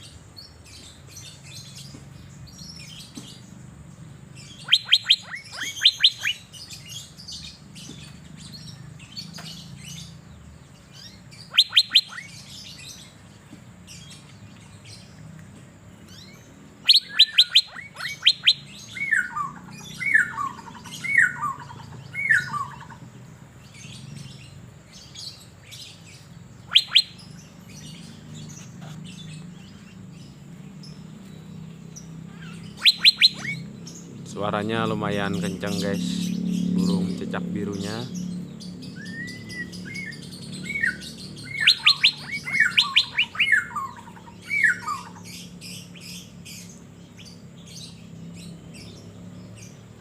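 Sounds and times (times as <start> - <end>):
soft bird chirps: 0.0 - 50.0
bird whistling calls: 4.4 - 7.5, 10.9 - 13.0, 16.1 - 23.0, 25.1 - 30.0, 32.3 - 38.3, 38.9 - 49.0.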